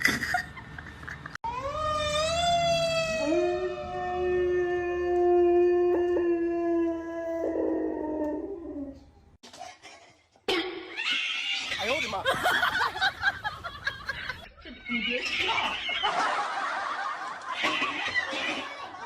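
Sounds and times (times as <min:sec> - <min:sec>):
dog howling: 0:01.5 - 0:09.1.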